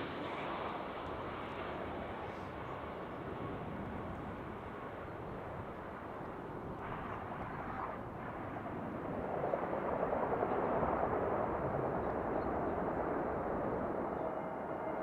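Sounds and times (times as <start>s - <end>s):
airliner engine noise: 0.0s - 15.0s.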